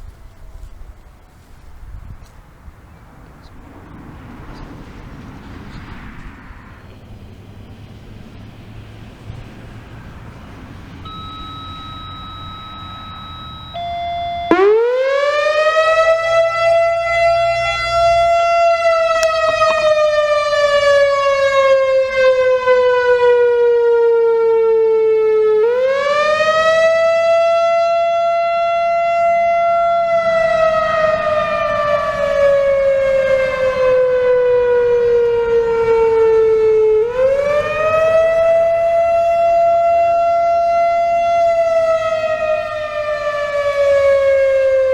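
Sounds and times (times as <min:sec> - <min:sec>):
electronic warning siren wailing: 0:11.0 - 0:44.9
steady siren tone: 0:11.0 - 0:44.9.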